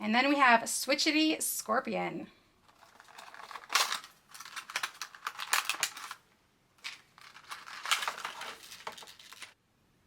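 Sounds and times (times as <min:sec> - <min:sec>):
plastic packaging crinkling: 0:02.7 - 0:06.2, 0:06.8 - 0:09.6.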